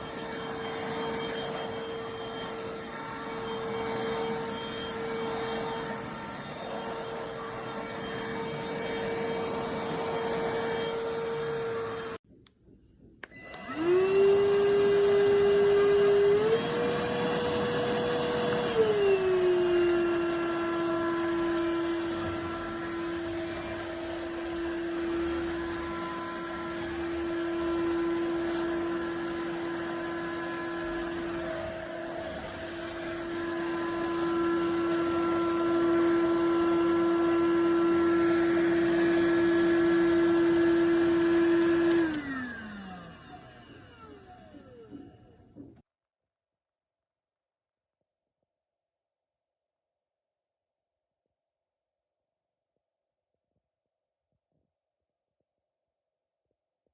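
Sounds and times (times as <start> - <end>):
stick vacuum motor whining: 0.0 - 12.2, 13.2 - 45.8.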